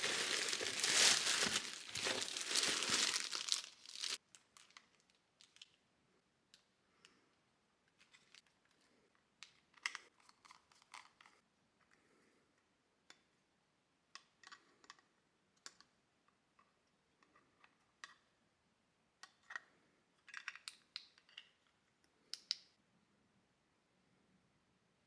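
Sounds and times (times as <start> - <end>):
packaging rustling: 0.0 - 4.7.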